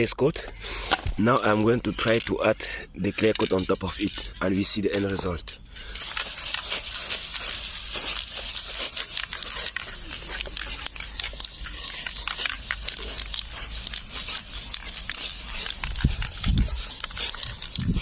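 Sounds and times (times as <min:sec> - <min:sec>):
clicks and crackles: 0:00.8 - 0:18.0
aerosol can spraying hiss: 0:06.0 - 0:18.0.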